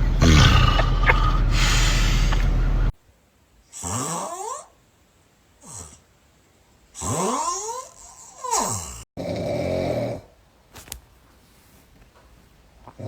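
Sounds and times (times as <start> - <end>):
loud rough snoring: 0.0 - 2.5, 3.7 - 4.7, 5.6 - 6.0, 7.0 - 10.3.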